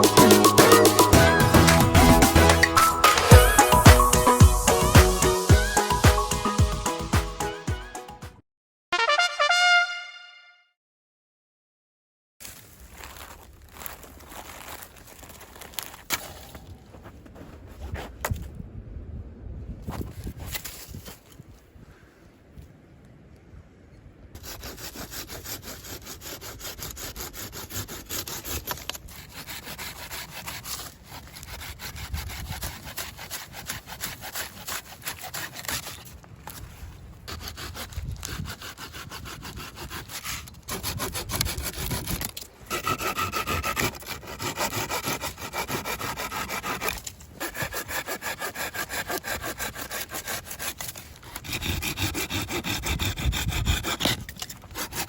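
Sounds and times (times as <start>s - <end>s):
hand saw cutting wood: 0.0s - 7.2s, 24.4s - 55.0s.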